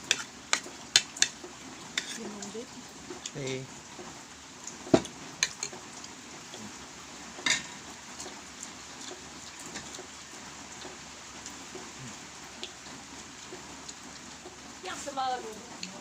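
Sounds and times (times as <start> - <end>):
rain hissing: 0.0 - 16.0
tableware clinking: 7.5 - 7.8.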